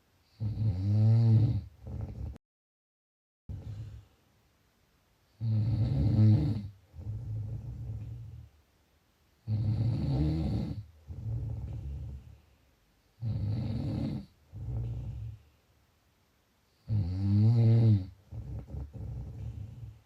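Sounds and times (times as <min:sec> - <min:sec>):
person snoring: 0:00.3 - 0:02.4, 0:05.4 - 0:08.5, 0:09.4 - 0:12.4, 0:13.2 - 0:15.4, 0:16.8 - 0:20.0
quiet long breath: 0:19.0 - 0:20.0.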